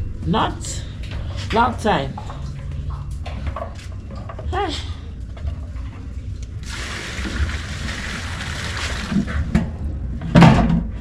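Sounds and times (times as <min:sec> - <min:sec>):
water pouring: 0:06.6 - 0:09.4.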